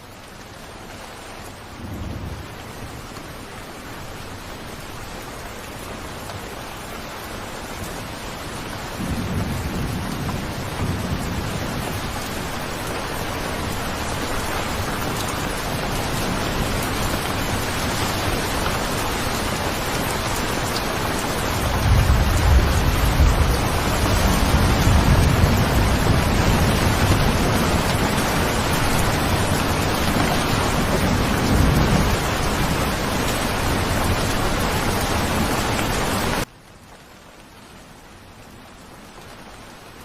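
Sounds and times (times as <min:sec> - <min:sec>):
steady rain: 0:00.0 - 0:40.0
thunder rumbling: 0:08.9 - 0:36.5.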